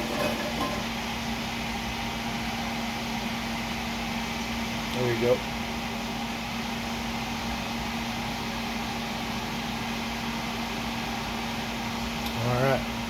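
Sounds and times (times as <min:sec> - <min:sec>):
fan humming and hissing: 0:00.0 - 0:13.0.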